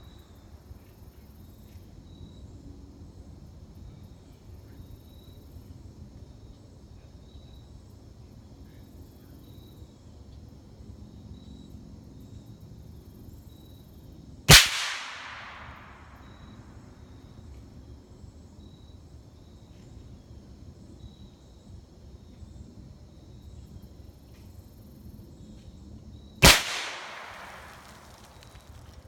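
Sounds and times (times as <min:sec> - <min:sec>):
suppressed rifle shot: 0:14.5 - 0:16.4, 0:26.4 - 0:28.6.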